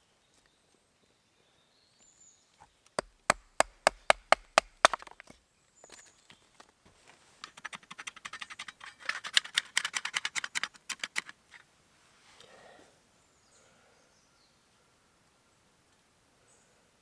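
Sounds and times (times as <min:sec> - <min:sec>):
knife scraping wood: 0:07.4 - 0:11.6.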